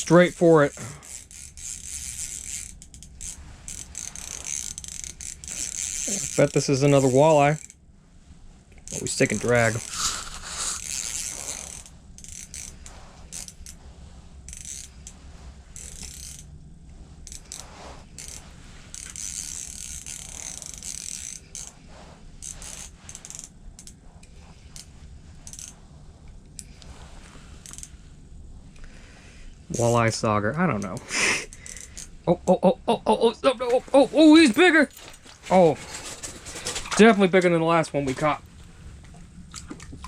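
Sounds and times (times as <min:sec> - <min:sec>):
fishing reel clicking whir: 0:00.0 - 0:07.8, 0:08.8 - 0:13.8, 0:14.4 - 0:16.6, 0:17.2 - 0:25.8, 0:27.6 - 0:28.0, 0:30.8 - 0:32.2.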